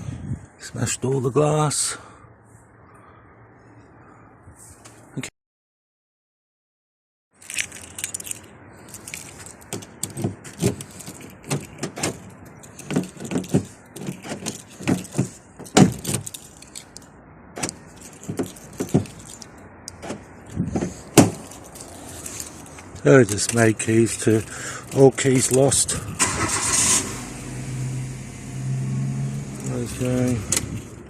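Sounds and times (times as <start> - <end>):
car keys jangling: 7.4 - 27.0, 27.6 - 31.0.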